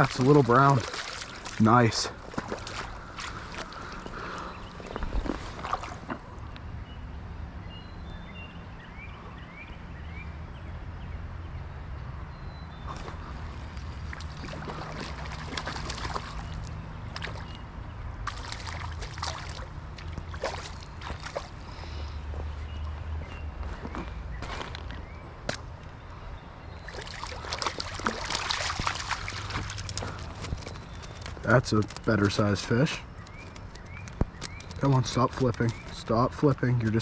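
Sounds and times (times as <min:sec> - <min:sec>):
creek water running: 0:00.0 - 0:06.4, 0:12.9 - 0:22.4, 0:26.8 - 0:37.0.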